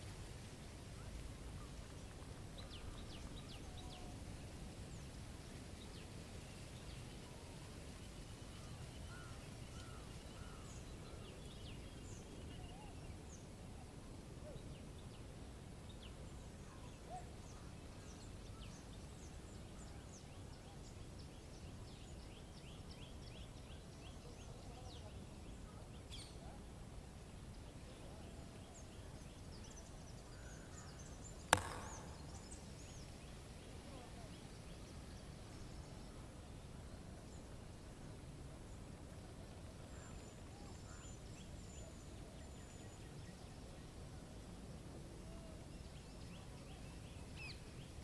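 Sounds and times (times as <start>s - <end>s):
birds chirping: 28.8s - 33.4s
sharp click: 31.5s - 32.4s.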